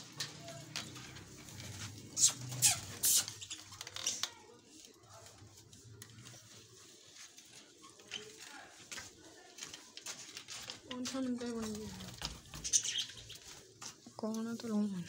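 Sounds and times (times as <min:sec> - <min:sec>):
budgerigars chirping: 0:12.6 - 0:13.4.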